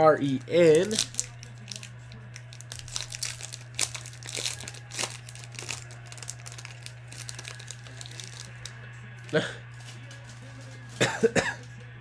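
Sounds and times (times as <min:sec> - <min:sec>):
wrappers crinkling: 0:00.0 - 0:11.7
low electrical hum: 0:00.0 - 0:12.0.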